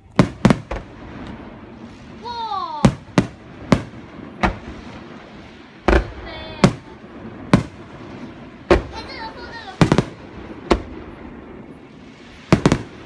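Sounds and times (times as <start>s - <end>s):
fireworks bangs: 0.0s - 13.0s
steady background hiss: 0.0s - 13.0s.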